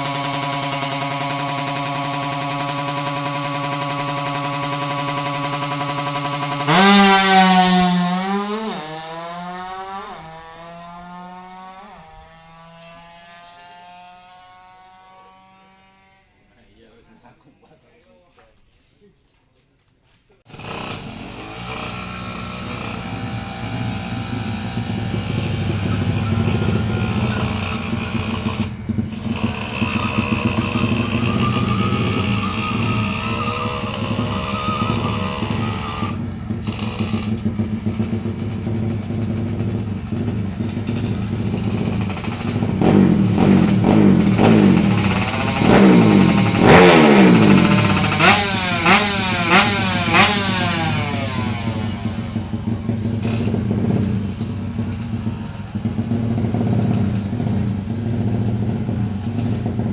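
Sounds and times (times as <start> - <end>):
motorcycle engine revving: 0.0 - 16.4, 20.5 - 59.9.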